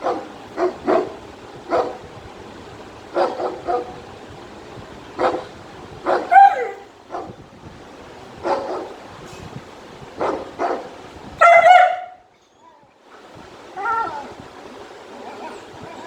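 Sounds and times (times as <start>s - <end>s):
puppy barking: 0.0s - 2.1s, 3.1s - 4.1s, 5.2s - 7.4s, 8.4s - 9.0s, 10.2s - 12.3s
puppy yelp: 6.1s - 7.3s, 11.4s - 12.8s, 13.8s - 14.4s, 15.1s - 16.0s.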